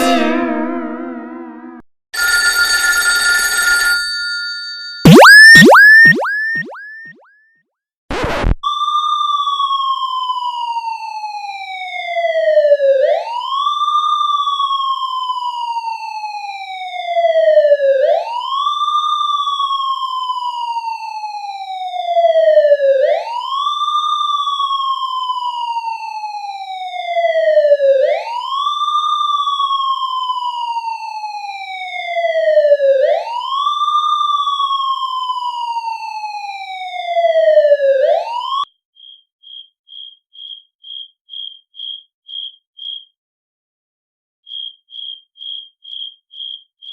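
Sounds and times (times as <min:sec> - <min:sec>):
electronic siren tone: 0:05.1 - 0:07.2, 0:08.1 - 0:38.7.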